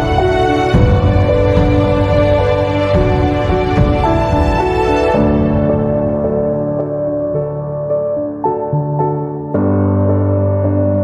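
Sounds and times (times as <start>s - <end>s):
steady low beat: 0.0s - 7.0s.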